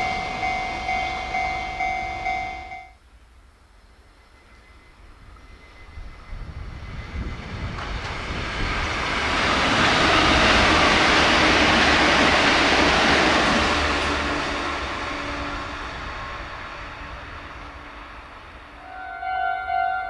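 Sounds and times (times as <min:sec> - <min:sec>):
wheel-on-rail noise: 0:00.0 - 0:02.9
train passing at high speed: 0:00.0 - 0:20.0.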